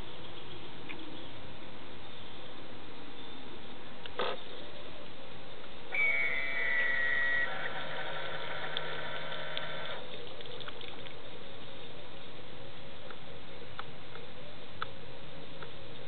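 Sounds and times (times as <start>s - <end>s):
steady hiss: 0.0s - 16.0s
mechanical whine: 5.9s - 10.1s.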